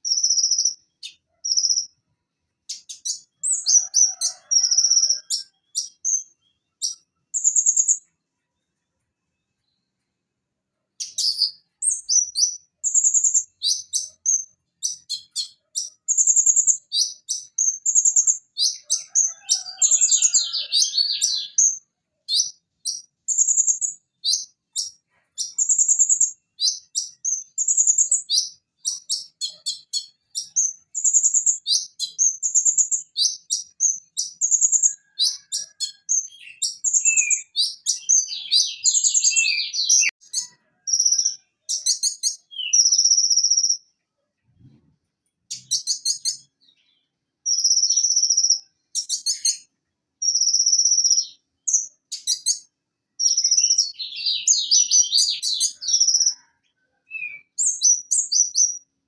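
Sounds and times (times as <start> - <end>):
sunbird singing: 2.7 - 8.1, 11.0 - 43.8, 45.5 - 56.5.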